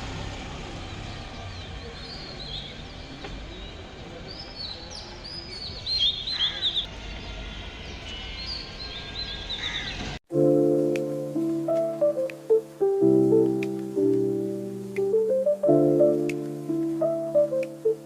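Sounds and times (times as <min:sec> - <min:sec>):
small birds chirping: 0:00.0 - 0:10.2, 0:10.9 - 0:18.0
low outdoor background hum: 0:00.0 - 0:18.0
piano music: 0:10.3 - 0:18.0.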